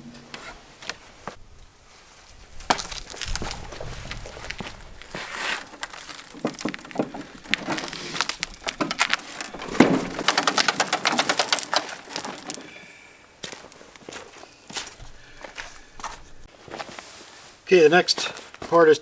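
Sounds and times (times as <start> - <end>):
fast run of clicks: 5.8 - 12.8.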